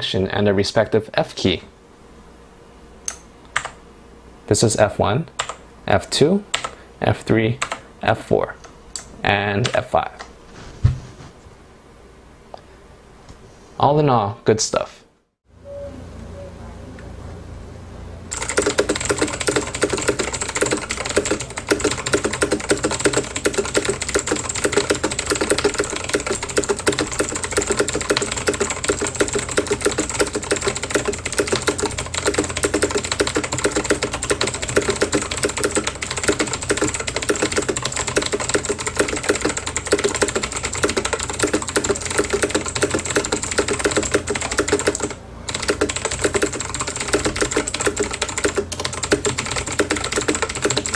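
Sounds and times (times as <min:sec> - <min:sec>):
mechanical keyboard typing: 0:03.6 - 0:03.8, 0:06.5 - 0:06.8, 0:07.6 - 0:07.8, 0:18.3 - 0:50.9.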